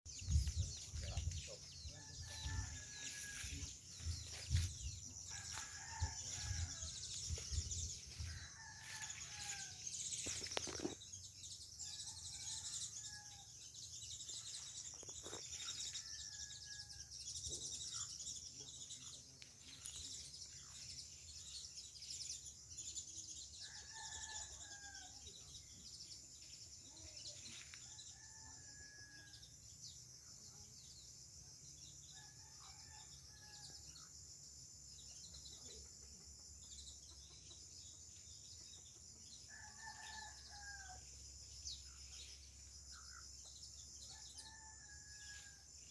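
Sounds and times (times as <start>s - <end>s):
insects chirring: 0.1s - 23.0s.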